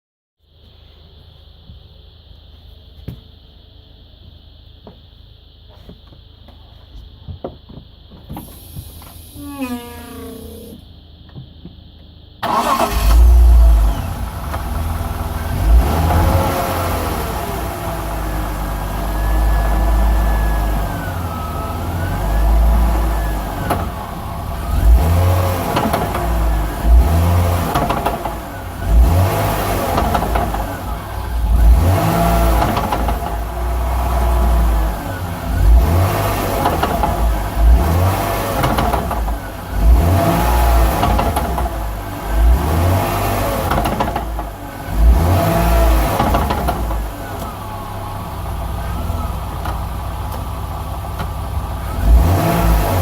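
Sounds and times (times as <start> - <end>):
car engine revving: 12.4 - 53.0.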